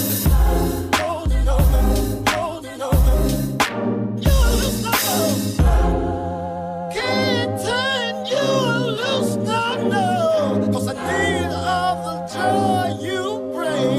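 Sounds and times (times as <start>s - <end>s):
melodic vocal music over chords: 0.0s - 13.9s.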